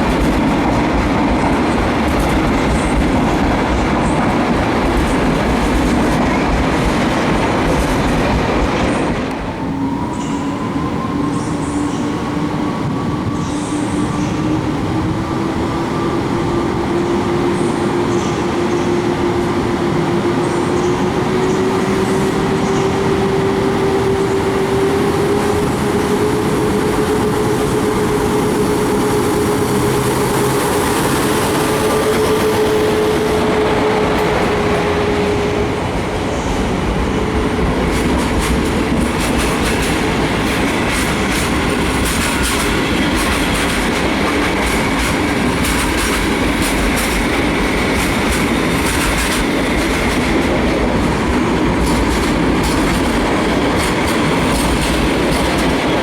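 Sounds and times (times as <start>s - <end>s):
train rumble: 0.0s - 56.0s
electric locomotive motors whining: 8.7s - 56.0s
wheels clicking over rail joints: 37.4s - 56.0s.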